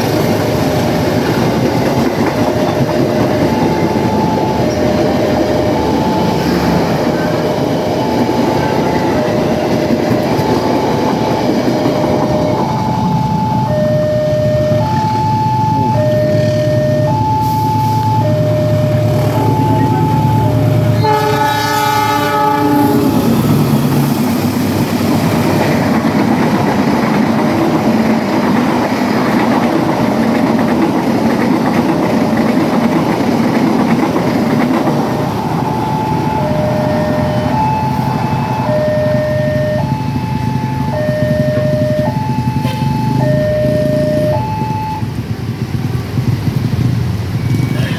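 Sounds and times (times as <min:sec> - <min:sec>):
two-tone warning signal: 0:00.0 - 0:23.2, 0:35.2 - 0:45.1
train rumbling past on rails: 0:00.0 - 0:47.9
locomotive horn blast: 0:18.9 - 0:23.2.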